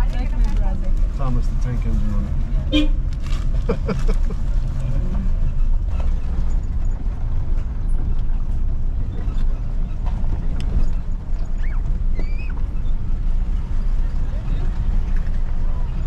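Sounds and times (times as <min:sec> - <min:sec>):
motor vehicle rumbling: 0:00.0 - 0:16.0
faint short squeaks: 0:09.1 - 0:15.2.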